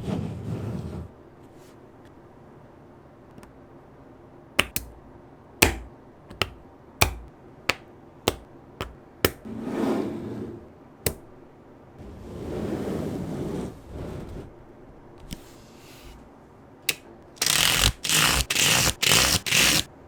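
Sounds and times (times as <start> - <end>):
magnetic balls clicking together: 4.6 - 5.0.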